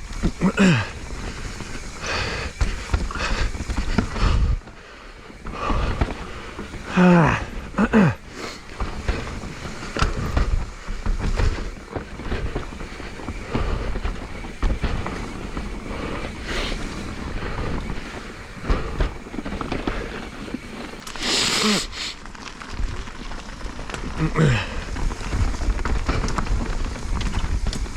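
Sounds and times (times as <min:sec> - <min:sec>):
mountain bike rattling over rough ground: 0:00.0 - 0:27.9
burst of hiss: 0:21.2 - 0:22.2.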